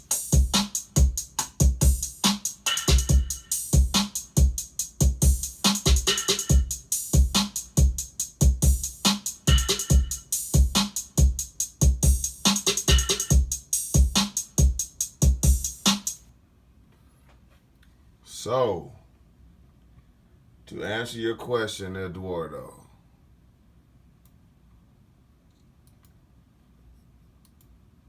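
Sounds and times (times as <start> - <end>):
electronic drum beat: 0.0 - 16.2.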